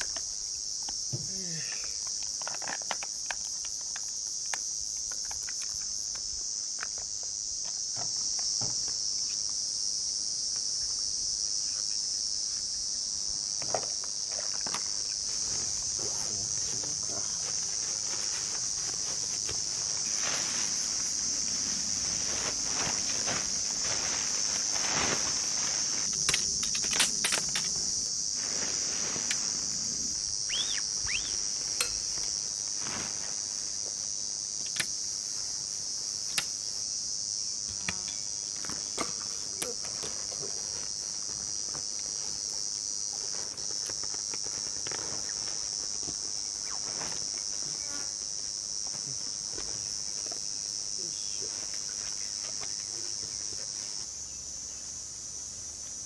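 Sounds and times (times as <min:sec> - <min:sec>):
high-pitched insect chorus: 0:00.0 - 0:56.0.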